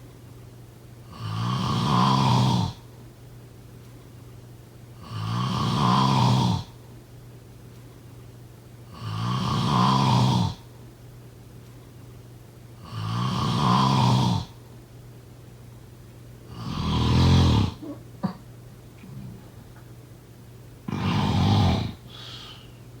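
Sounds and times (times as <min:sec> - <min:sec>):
person snoring: 0:01.1 - 0:02.8, 0:05.0 - 0:06.7, 0:08.9 - 0:10.6, 0:12.8 - 0:14.5, 0:16.5 - 0:18.0, 0:20.9 - 0:22.8.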